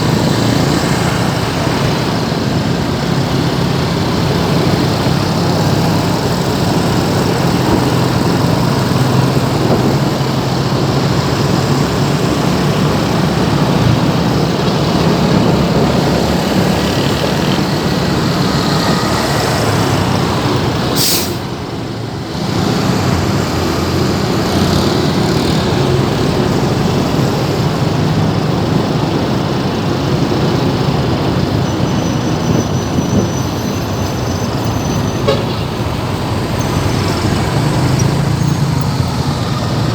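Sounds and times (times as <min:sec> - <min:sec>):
road noise: 0:00.0 - 0:39.9
traffic engines humming: 0:00.0 - 0:39.9
brief high hiss: 0:21.0 - 0:21.5.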